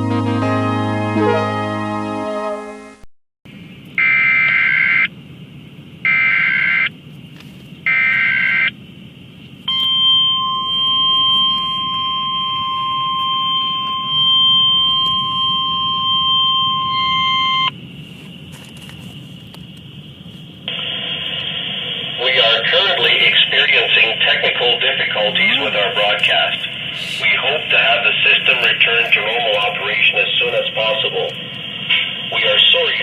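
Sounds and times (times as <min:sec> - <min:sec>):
music: 0:00.0 - 0:03.0
steady attention tone: 0:07.8 - 0:33.0
data bursts: 0:09.7 - 0:17.8, 0:20.7 - 0:33.0
steady hiss: 0:17.8 - 0:33.0.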